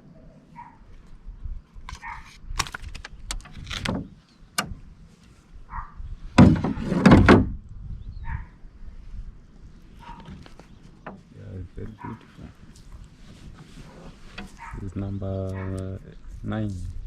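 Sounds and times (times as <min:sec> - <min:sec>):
thumps: 0:06.4 - 0:07.6.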